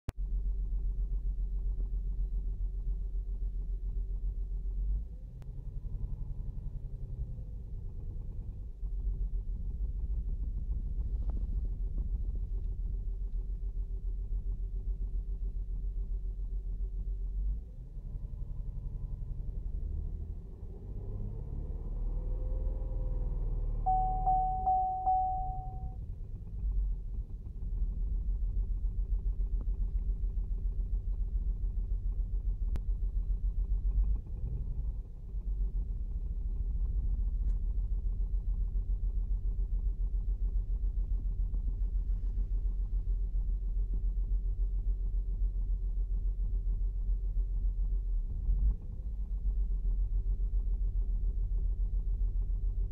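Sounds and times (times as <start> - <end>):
car engine low rumble: 0.1 - 52.9
steady high tone: 23.9 - 26.0.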